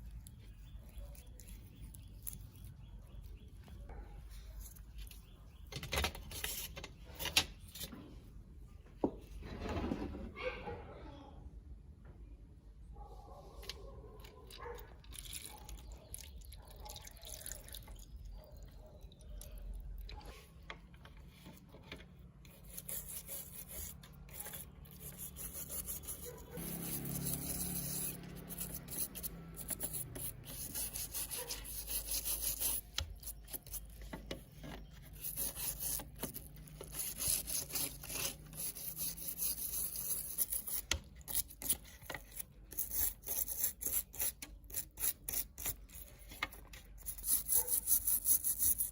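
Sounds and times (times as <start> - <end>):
rubbing and scraping strokes: 21.1 - 48.9.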